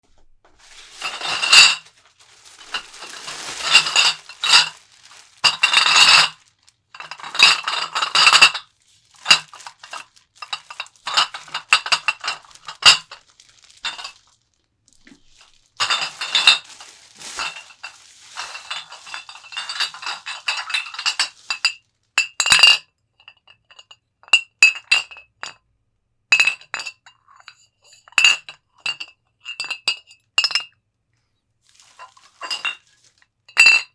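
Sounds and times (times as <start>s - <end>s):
glass bottles clinking: 0.9s - 6.4s, 7.0s - 13.2s, 13.8s - 14.2s, 15.8s - 22.8s, 31.9s - 32.9s, 33.5s - 33.9s.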